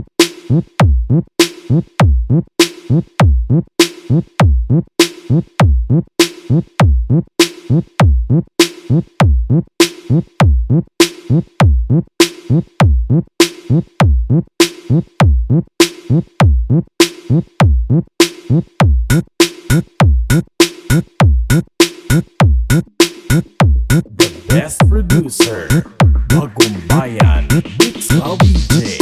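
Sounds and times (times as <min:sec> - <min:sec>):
drum machine beat: 0:00.0 - 0:29.0
deep booming bass kicks: 0:23.6 - 0:26.5.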